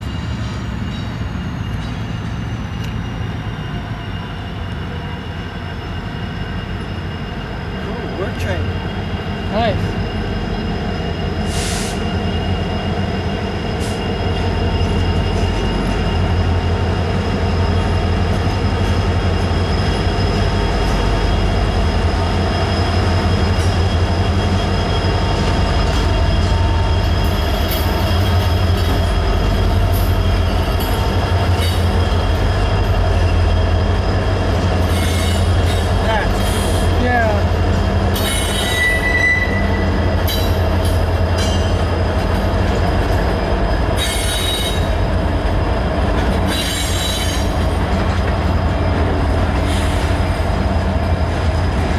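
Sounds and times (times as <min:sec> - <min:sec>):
freight train wheels rumbling: 0:00.0 - 0:51.9
high-pitched wheel squeal: 0:34.7 - 0:36.9, 0:38.2 - 0:41.8, 0:44.0 - 0:45.0, 0:46.4 - 0:47.6.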